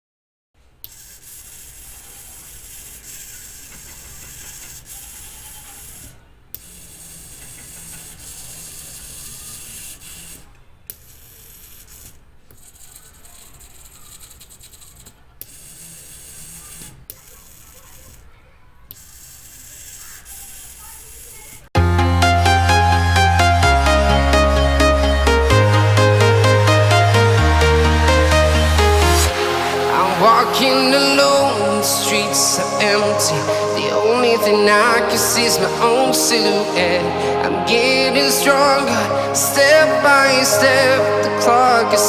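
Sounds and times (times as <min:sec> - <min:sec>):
servo motors whirring: 0:00.8 - 0:21.7.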